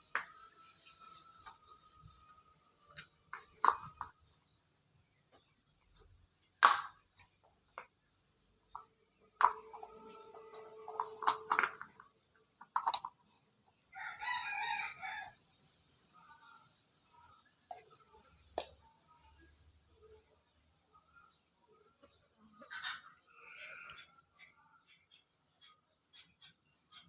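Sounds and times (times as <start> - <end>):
objects knocking and clicking: 2.9 - 4.3, 5.3 - 8.1, 8.7 - 13.3.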